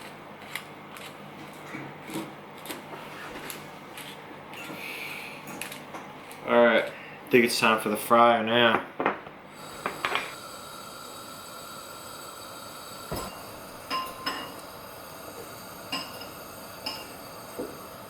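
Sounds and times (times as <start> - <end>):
faint steady hiss: 9.5 - 18.0
kitchen utensils and dishes clinking: 13.1 - 14.7, 15.9 - 17.8.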